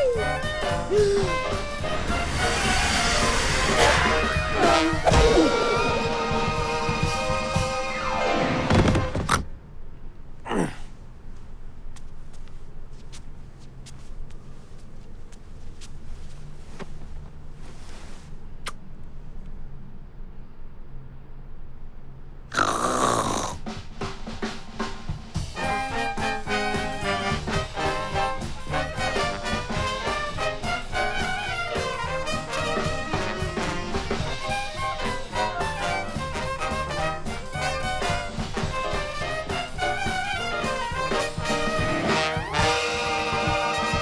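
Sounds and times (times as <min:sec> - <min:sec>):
jazzy brass music: 0:00.0 - 0:09.5, 0:25.4 - 0:44.0.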